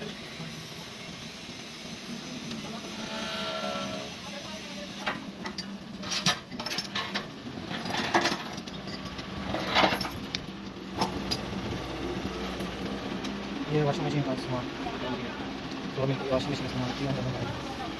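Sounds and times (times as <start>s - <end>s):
metal parts clinking: 5.4s - 10.4s.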